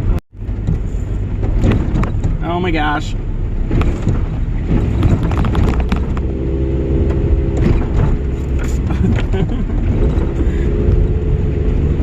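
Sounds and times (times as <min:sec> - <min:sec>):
engine drone: 0:00.0 - 0:12.0
vehicle rumble on dirt road: 0:00.0 - 0:12.0
knocks and rattles: 0:00.4 - 0:02.6, 0:03.6 - 0:06.4, 0:07.0 - 0:10.5.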